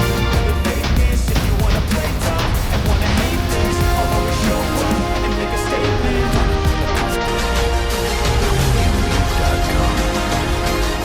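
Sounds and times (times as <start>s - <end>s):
guitar: 0.0s - 11.0s
music with heavy beat: 0.0s - 11.0s.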